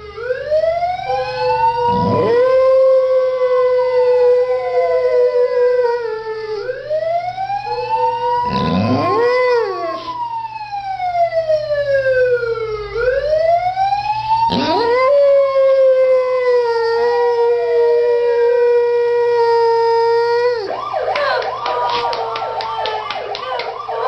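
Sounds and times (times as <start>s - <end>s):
siren wailing: 0.0s - 24.0s
dog howling: 1.2s - 6.6s, 7.7s - 10.2s, 14.5s - 21.4s.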